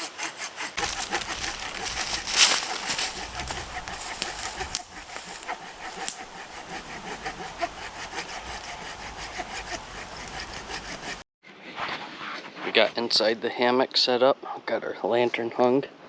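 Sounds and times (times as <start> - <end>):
hand saw cutting wood: 0.0 - 11.2.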